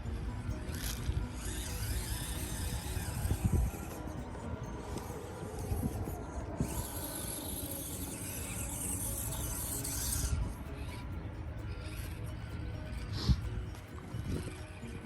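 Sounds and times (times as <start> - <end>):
toy car drivetrain whirring: 0.0 - 15.0.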